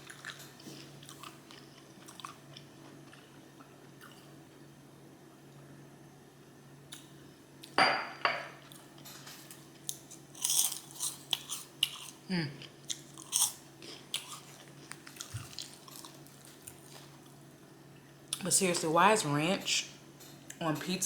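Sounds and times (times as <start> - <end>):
chewing with crunches: 0.0 - 4.5, 8.6 - 17.4.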